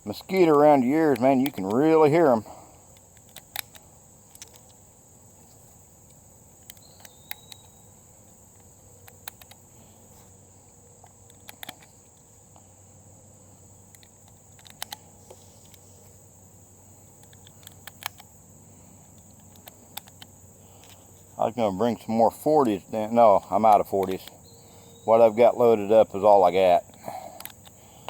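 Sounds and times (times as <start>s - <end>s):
insects droning: 0.0s - 28.0s
light clicks: 0.1s - 2.0s, 2.9s - 4.8s, 5.5s - 9.6s, 11.0s - 12.7s, 13.9s - 15.9s, 17.2s - 18.4s, 19.0s - 21.3s, 23.6s - 24.7s, 26.8s - 27.8s.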